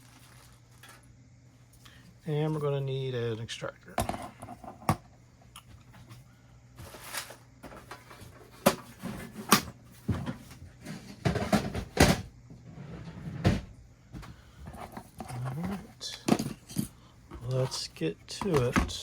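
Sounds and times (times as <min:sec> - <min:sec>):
rustling: 0:00.0 - 0:01.0.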